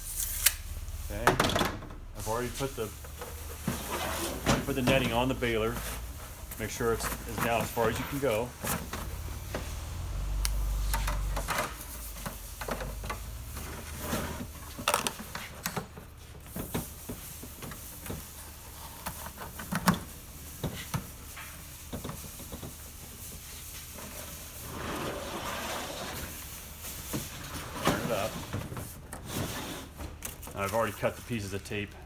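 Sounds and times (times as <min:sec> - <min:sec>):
low rumble: 0:00.0 - 0:03.7.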